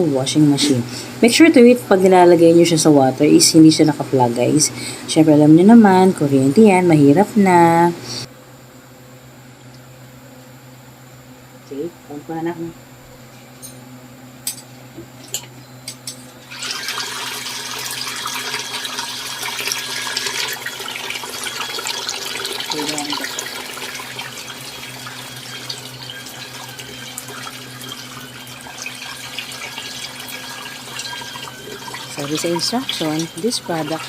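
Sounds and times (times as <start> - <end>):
washing machine churning water: 16.4 - 34.0.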